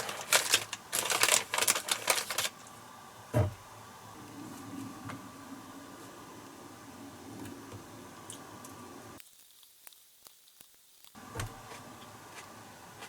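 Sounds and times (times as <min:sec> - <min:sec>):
low steady hum: 0:00.0 - 0:09.5.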